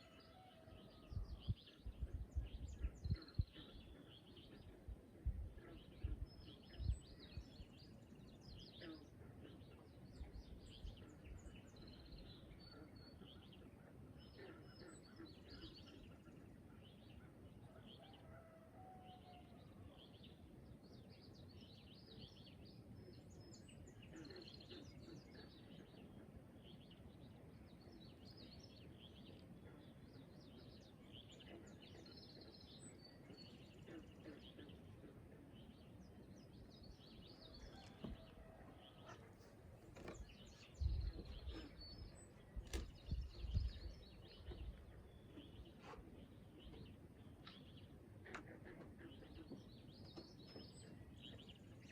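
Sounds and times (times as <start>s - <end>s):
birds chirping and singing: 0.0s - 18.6s, 19.4s - 51.9s
low background noise: 0.0s - 51.9s.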